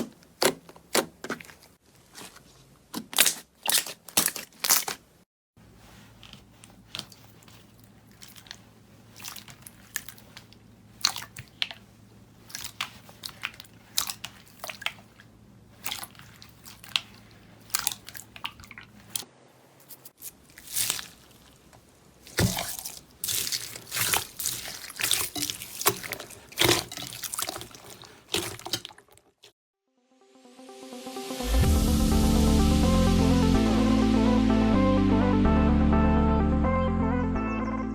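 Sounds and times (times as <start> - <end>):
slime crackling and squishing: 0.0 - 5.1, 6.0 - 19.2, 19.9 - 29.5.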